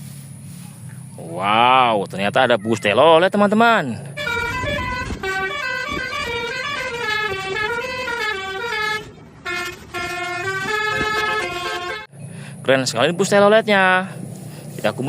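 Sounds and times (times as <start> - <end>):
musical bus horn: 4.1 - 12.1.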